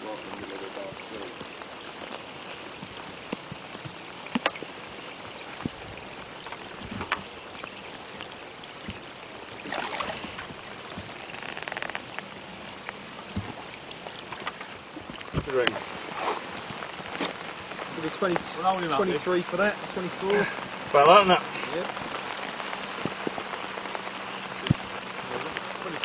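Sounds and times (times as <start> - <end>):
steady rain falling: 0.0 - 26.0.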